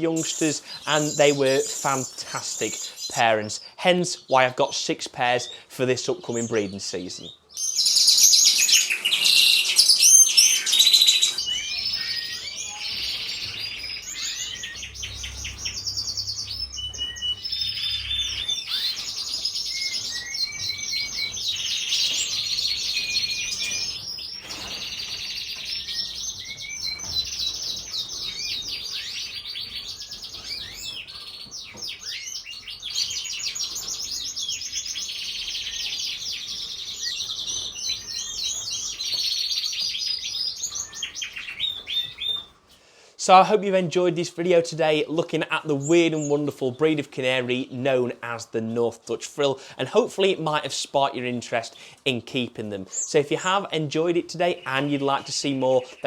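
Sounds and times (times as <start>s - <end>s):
canary trilling song: 0.0s - 4.3s, 5.4s - 42.8s, 52.6s - 56.0s.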